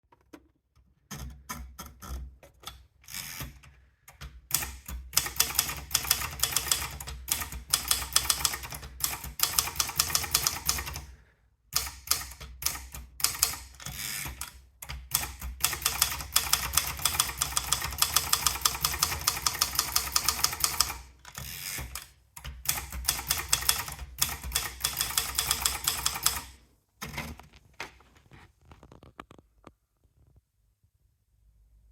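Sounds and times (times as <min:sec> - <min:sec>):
typewriter keystrokes: 0:03.4 - 0:11.1, 0:11.8 - 0:27.4.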